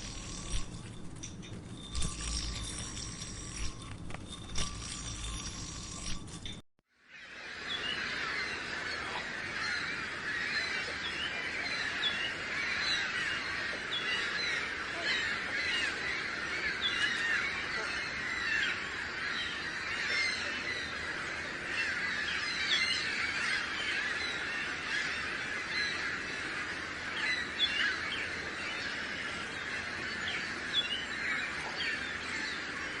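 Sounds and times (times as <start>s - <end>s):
flock of birds chirping: 7.1s - 33.0s.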